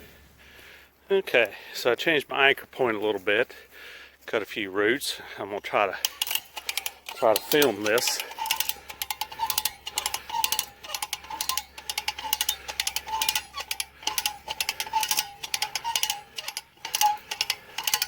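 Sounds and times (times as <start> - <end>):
ratchet clicking: 6.0 - 18.0.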